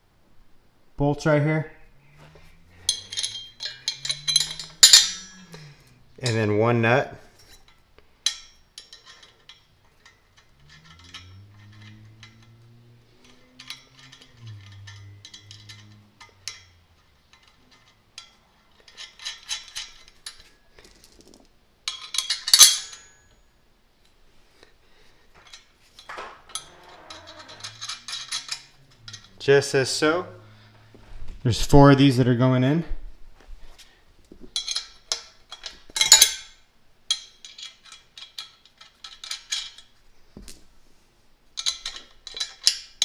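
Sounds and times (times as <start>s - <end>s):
bolts clinking on metal frame: 1.0s - 33.1s, 33.7s - 43.0s
loud metallic clatter: 2.8s - 5.6s.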